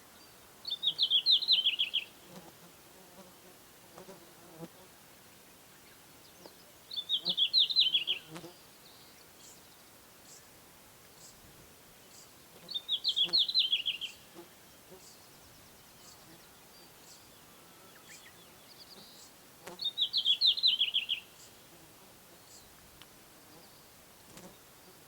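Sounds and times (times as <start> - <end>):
bird singing: 0.2 - 2.2, 5.7 - 10.5, 12.0 - 21.6.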